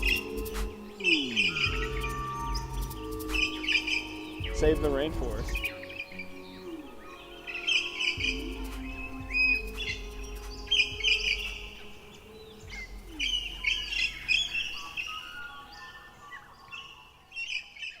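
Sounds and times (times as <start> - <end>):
birds chirping: 0.0 - 18.0.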